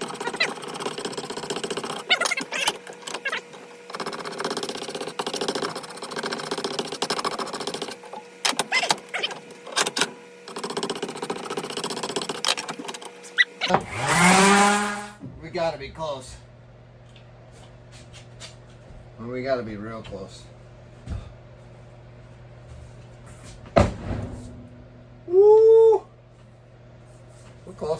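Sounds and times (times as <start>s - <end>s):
wood rasp scraping wood: 0.0s - 15.1s.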